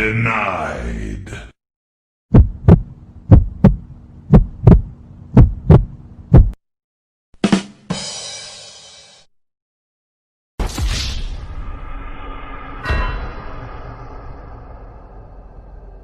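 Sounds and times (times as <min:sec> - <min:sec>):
heartbeat thumps: 0:02.3 - 0:06.6
faint steady hum: 0:02.4 - 0:06.6.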